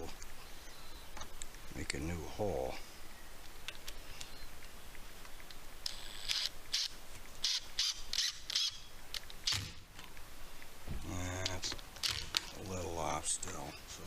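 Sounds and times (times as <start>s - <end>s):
wood screw squeaking: 5.8s - 8.9s.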